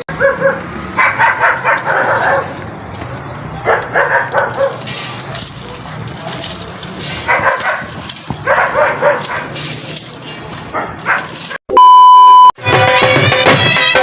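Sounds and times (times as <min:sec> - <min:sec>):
electronic beep: 0:11.7 - 0:12.6
music with drums: 0:12.6 - 0:14.0.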